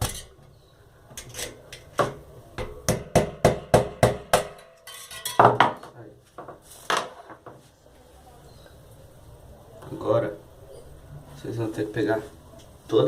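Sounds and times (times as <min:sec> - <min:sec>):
metal tool tapping metal: 0:01.2 - 0:05.8
metallic ring: 0:04.6 - 0:05.4.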